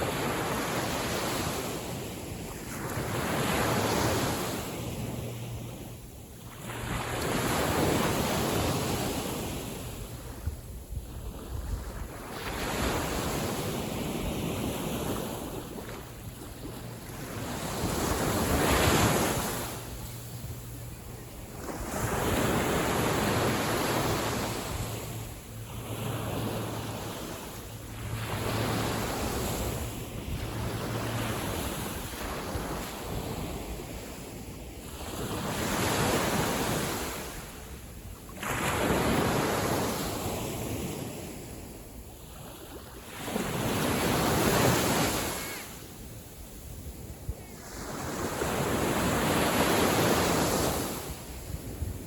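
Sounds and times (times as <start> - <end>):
small sea waves washing: 0.0 - 37.7.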